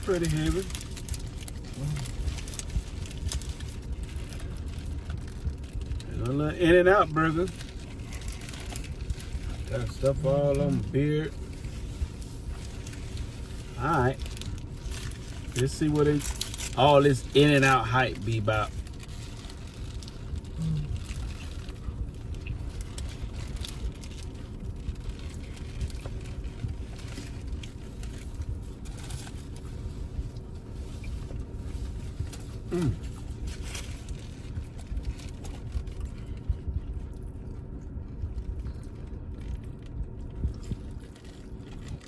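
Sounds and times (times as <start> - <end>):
car engine idling: 0.0 - 42.0
person chewing: 20.2 - 23.3.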